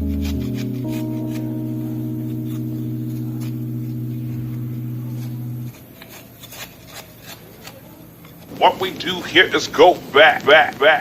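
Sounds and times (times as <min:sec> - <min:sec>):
music sustained chord: 0:00.0 - 0:05.8.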